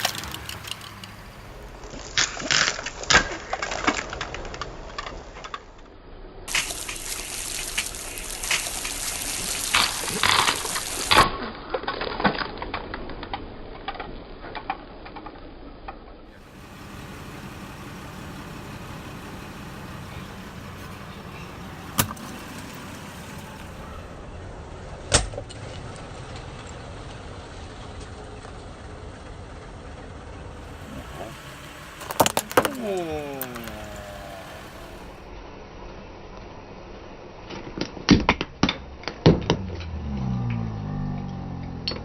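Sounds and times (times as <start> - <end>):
tyre crushing crunchy objects: 6.5 - 13.1, 32.0 - 35.2
car engine running: 16.2 - 35.4.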